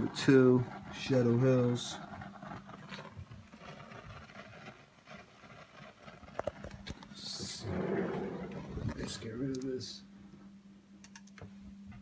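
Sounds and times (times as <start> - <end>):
microphone crackling and rustling: 0.0 - 9.4
low hum: 6.5 - 12.0.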